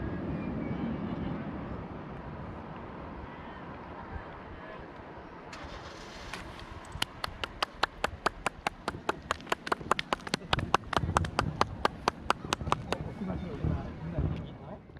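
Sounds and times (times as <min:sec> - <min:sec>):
hands clapping: 0:06.8 - 0:13.3.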